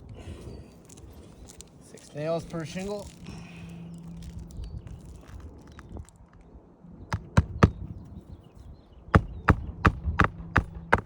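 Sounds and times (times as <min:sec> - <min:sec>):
hammer nailing roof shingle: 0:07.1 - 0:07.9, 0:09.2 - 0:11.0.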